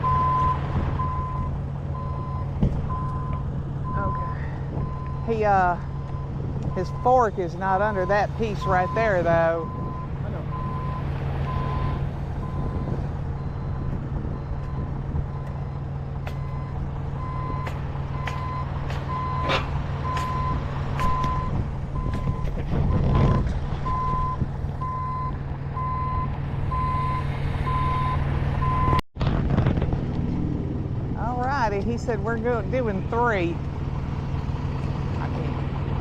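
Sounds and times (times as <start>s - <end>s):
reversing alarm beeps: 0.0s - 15.8s, 16.4s - 29.0s
forklift engine running: 0.0s - 36.0s.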